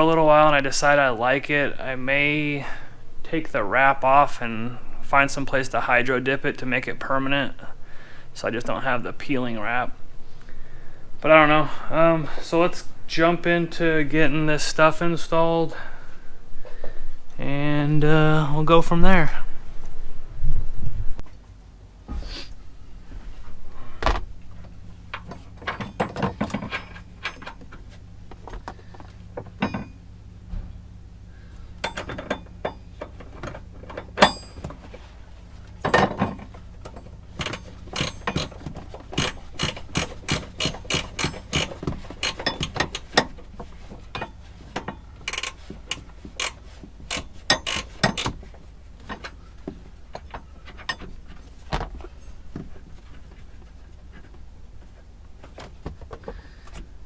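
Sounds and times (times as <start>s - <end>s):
faint low hum: 0.0s - 57.0s
ratchet wrench clicking: 37.4s - 43.3s, 45.2s - 48.4s.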